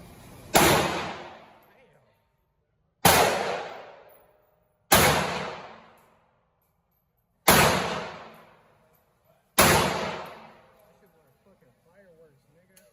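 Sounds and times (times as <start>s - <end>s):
gunshots: 0.5s - 1.5s, 3.0s - 4.1s, 4.9s - 6.0s, 7.4s - 8.5s, 9.6s - 10.6s.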